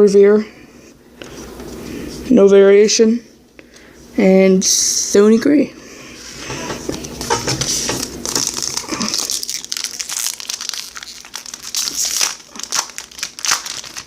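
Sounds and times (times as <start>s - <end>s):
foil wrapper crinkling: 7.9s - 14.0s.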